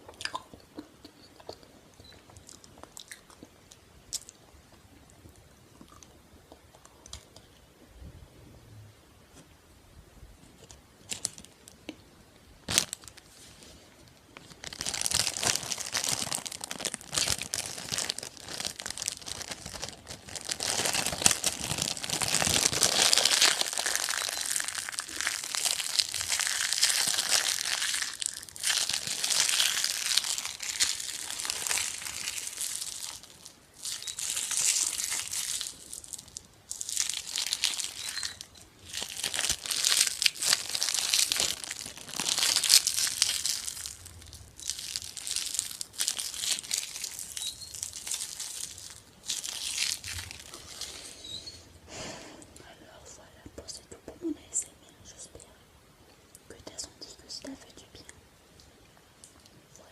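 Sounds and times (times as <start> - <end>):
crinkly material rustling: 10.5 - 11.8, 12.6 - 51.4.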